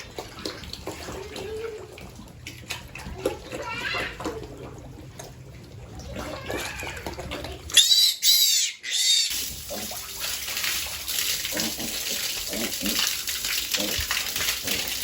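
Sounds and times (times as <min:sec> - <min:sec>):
piglets squealing: 0:07.7 - 0:09.4
water spraying: 0:09.3 - 0:15.0.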